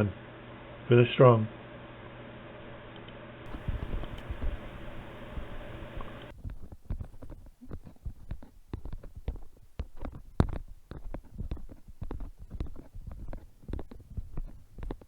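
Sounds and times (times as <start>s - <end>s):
camera handling thumps and rubbing: 3.5s - 15.0s
footsteps on a trail: 3.5s - 15.0s.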